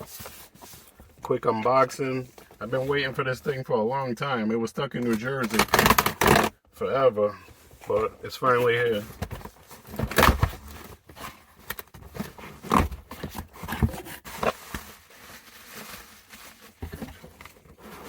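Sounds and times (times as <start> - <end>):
cardboard box scraping and rustling: 8.5 - 18.0.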